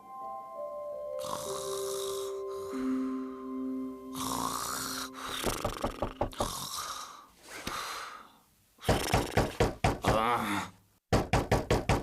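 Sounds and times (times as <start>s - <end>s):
cartoon character snoring: 1.2s - 2.8s, 4.1s - 7.2s.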